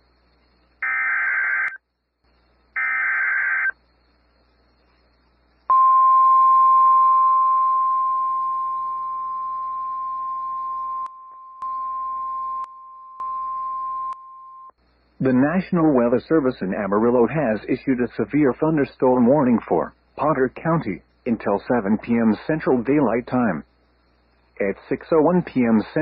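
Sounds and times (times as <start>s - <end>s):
buzzy data tone bursts: 0.8s - 1.8s, 2.7s - 6.1s, 7.1s - 14.1s
steady attention tone: 0.8s - 26.0s.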